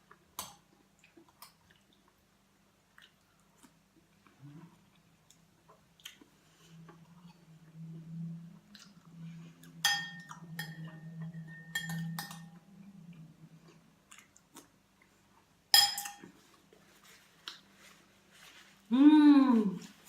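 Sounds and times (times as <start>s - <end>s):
low steady hum: 0.0s - 20.0s
soft eating noises: 0.0s - 20.0s
metal spoon clinking on dishes: 9.8s - 12.6s, 15.8s - 16.3s.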